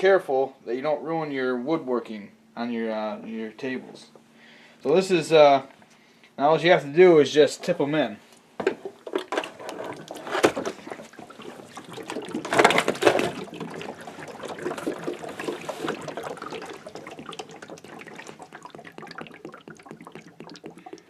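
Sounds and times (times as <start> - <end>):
water gurgling and splashing: 9.0 - 21.0.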